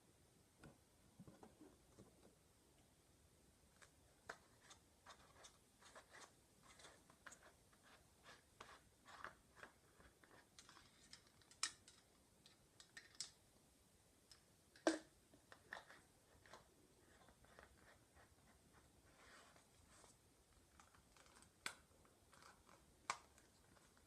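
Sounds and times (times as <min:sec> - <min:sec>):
soft tapping on small objects: 0:08.6 - 0:13.4.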